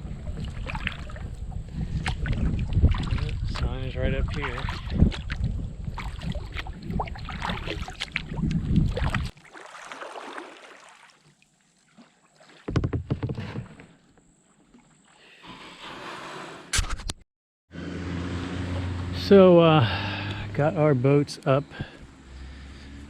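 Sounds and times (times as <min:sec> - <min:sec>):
low rumble on microphone: 0:00.0 - 0:09.3
water noise: 0:00.0 - 0:15.9, 0:17.8 - 0:23.0
paddle knocking kayak hull: 0:12.7 - 0:13.8.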